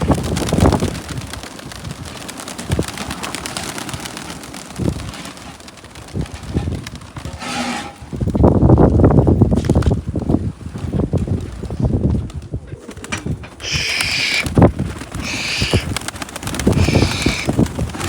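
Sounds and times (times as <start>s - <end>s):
wind noise on microphone: 0.0s - 18.0s
pigeons cooing: 12.6s - 18.0s.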